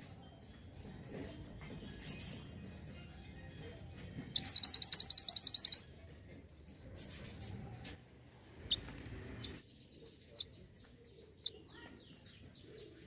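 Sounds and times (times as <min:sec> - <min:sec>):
faint high bird chirps: 0:00.0 - 0:08.0, 0:08.6 - 0:13.0
songbird fast trill: 0:04.3 - 0:05.9.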